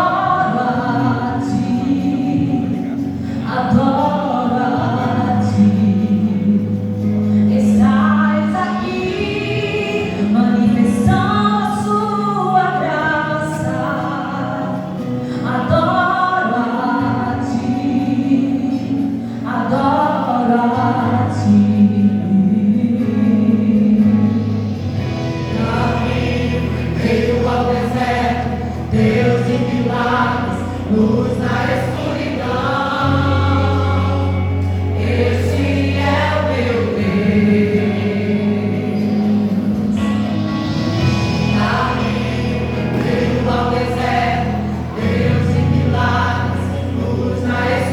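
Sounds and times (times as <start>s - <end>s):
vocal group singing gospel: 0.0s - 47.9s
low instrumental accompaniment: 21.0s - 47.9s.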